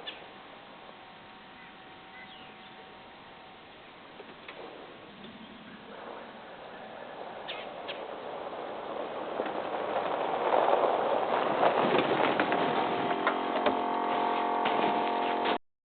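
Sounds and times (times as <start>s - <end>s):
rush of air: 4.4s - 15.0s
train air horn chord: 12.6s - 15.6s.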